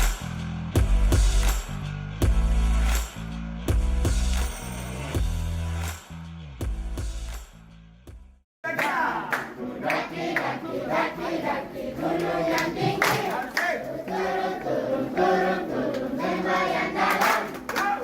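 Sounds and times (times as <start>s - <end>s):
group singing together: 8.7s - 18.0s.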